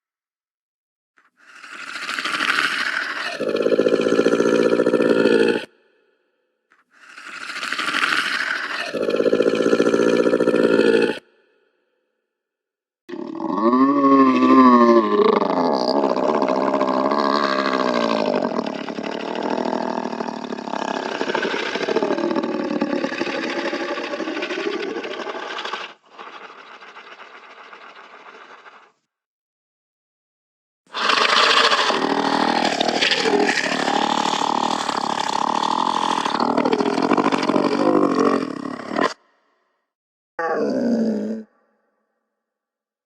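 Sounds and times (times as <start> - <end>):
rasping monster growl: 1.5 - 5.7, 7.0 - 11.2, 13.1 - 28.7, 30.9 - 39.2, 40.4 - 41.6.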